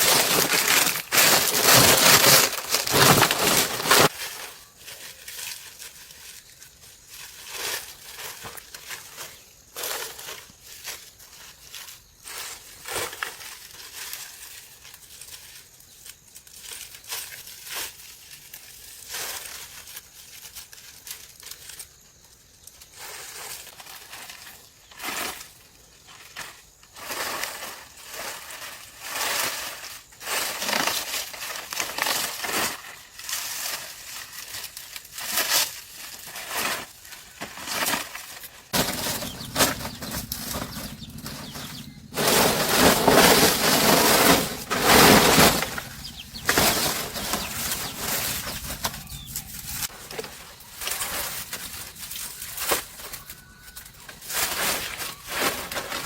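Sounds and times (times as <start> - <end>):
material crunching and rustling: 0.0 - 8.8, 30.6 - 53.4.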